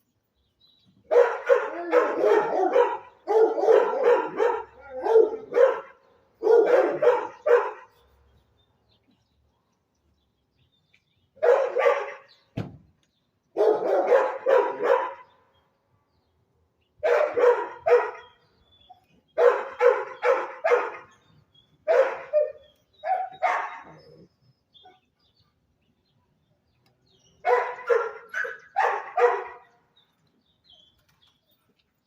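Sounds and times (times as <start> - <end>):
dog barking: 1.1 - 7.9, 11.4 - 12.3, 13.6 - 15.3, 17.0 - 18.4, 19.4 - 21.1, 21.9 - 24.0, 27.4 - 29.7.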